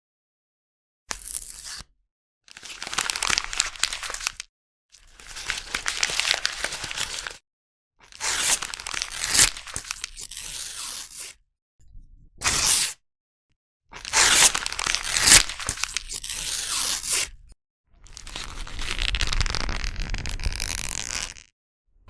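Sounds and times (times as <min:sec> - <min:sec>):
paper crumpling: 0:02.8 - 0:04.4, 0:05.2 - 0:07.4, 0:08.2 - 0:10.5, 0:14.0 - 0:17.2, 0:18.1 - 0:21.5.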